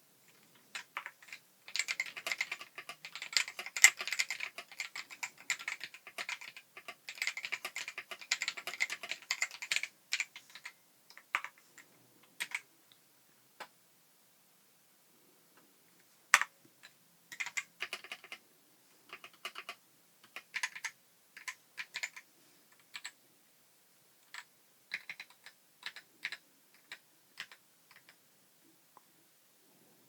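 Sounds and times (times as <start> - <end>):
mechanical keyboard keystroke clacks: 0.7 - 11.6, 17.3 - 18.4, 19.1 - 22.2, 24.3 - 28.2.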